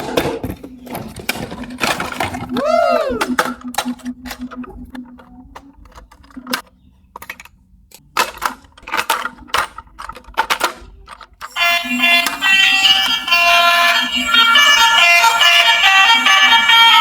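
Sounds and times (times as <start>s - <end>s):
plastic toys clicking: 0.1s - 13.6s.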